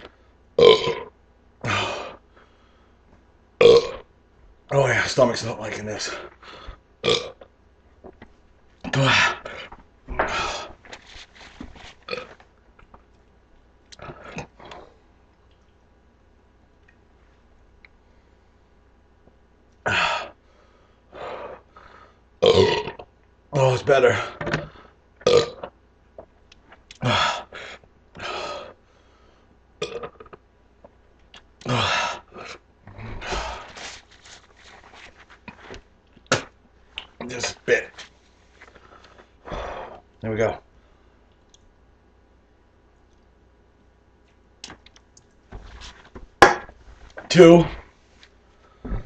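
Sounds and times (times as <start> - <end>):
man belching loudly: 0.6 - 2.1, 3.6 - 4.0, 7.0 - 7.5, 22.4 - 23.0, 25.2 - 25.7, 29.8 - 30.4
man gasping and breathing hard: 8.9 - 10.8, 27.0 - 28.8, 31.7 - 33.8.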